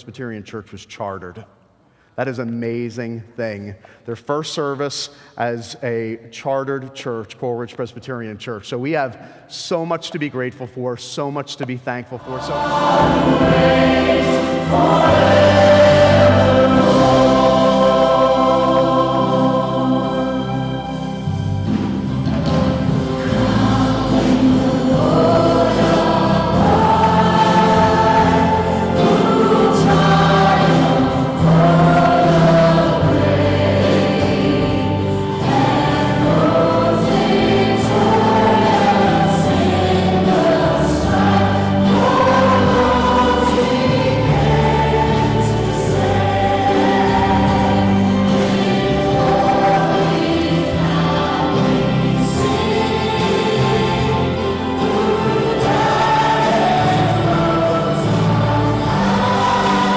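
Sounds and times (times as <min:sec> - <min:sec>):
choir singing a hymn: 0:11.9 - 0:59.9
instrumental accompaniment: 0:12.2 - 0:59.9.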